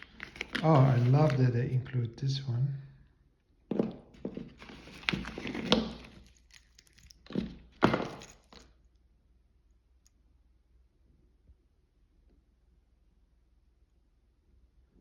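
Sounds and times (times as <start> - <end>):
packaging rustling: 0.0 - 1.5, 4.1 - 8.7
box being set down knocks: 7.3 - 8.4.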